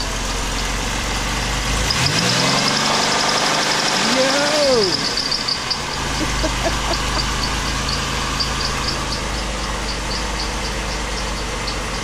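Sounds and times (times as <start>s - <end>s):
car engine idling with knocking: 0.0s - 12.0s
deep hum: 5.0s - 12.0s.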